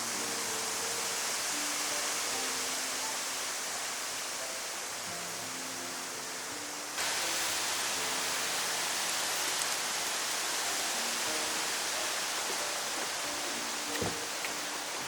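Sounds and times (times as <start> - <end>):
soft background music: 0.0 - 15.0
steady hiss: 0.0 - 15.0.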